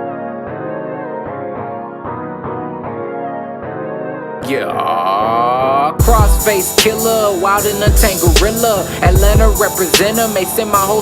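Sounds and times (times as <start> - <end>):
hip-hop music: 0.0 - 11.0.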